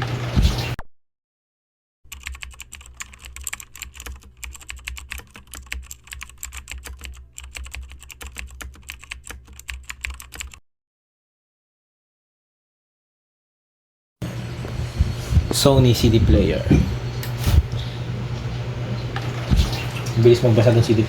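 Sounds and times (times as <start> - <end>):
rapid irregular clicking: 2.1 - 10.6
low steady hum: 14.2 - 21.0.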